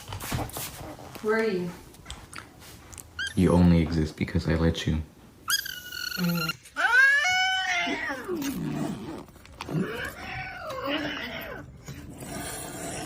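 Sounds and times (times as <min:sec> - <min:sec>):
cat yowling: 0:05.5 - 0:09.1, 0:09.7 - 0:11.8.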